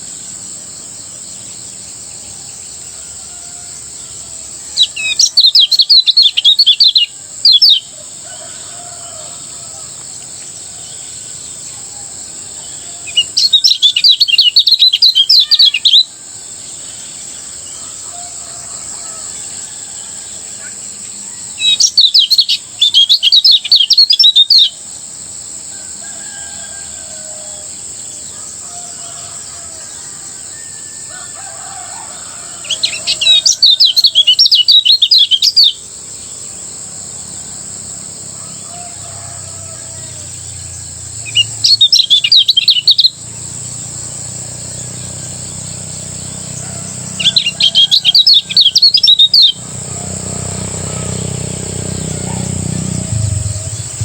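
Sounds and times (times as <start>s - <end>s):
bird chattering song: 4.7s - 8.0s, 12.6s - 18.0s, 20.5s - 24.8s, 32.6s - 35.8s, 40.6s - 43.5s, 44.6s - 49.7s, 50.8s - 54.0s
steady high-pitched buzz: 48.4s - 54.0s.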